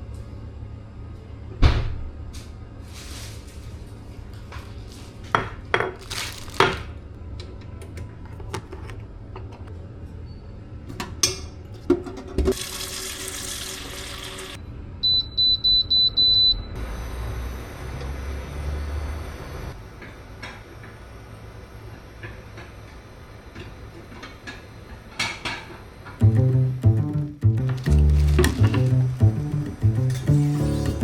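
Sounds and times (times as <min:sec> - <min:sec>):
appliance humming: 0:12.4 - 0:14.6, 0:26.2 - 0:31.0
water running from tap: 0:12.5 - 0:14.6.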